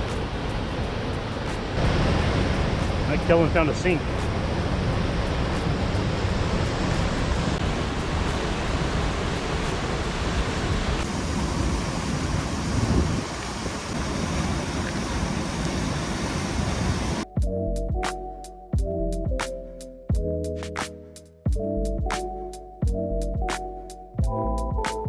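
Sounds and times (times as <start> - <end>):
creek water rushing: 0.0 - 17.2
wind on microphone: 0.0 - 17.3
music: 17.2 - 25.0.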